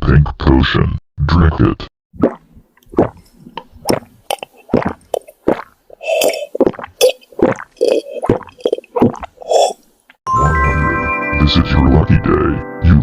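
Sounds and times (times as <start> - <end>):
cartoon gulping: 1.4 - 10.0.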